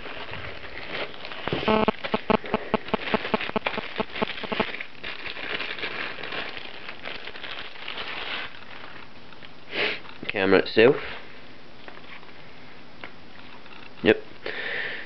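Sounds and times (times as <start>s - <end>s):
plastic packaging crinkling: 0.0s - 10.2s.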